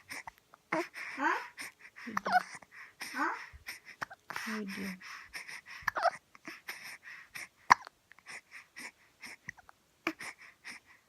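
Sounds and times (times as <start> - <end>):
baby breathing: 0.0 - 11.0
baby hiccupping: 2.2 - 2.6, 5.9 - 6.7, 7.7 - 8.0.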